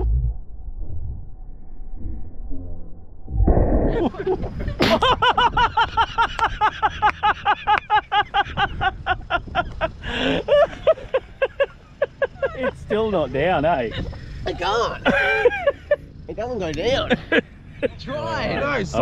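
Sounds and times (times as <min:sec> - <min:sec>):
rapid high-pitched laughter: 0:03.9 - 0:12.8, 0:13.7 - 0:16.2.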